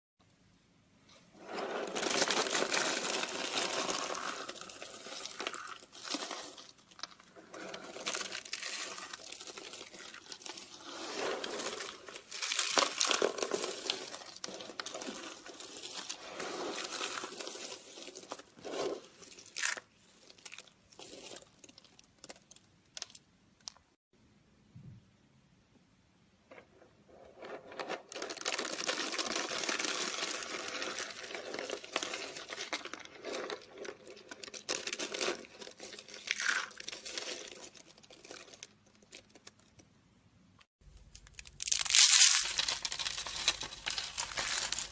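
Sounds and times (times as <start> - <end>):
sharp soap crunches: 41.0 - 44.9.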